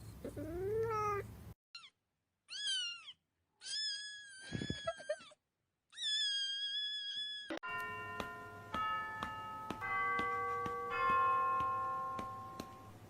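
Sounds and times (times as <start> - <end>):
cat meowing: 0.3 - 1.2, 2.5 - 4.8.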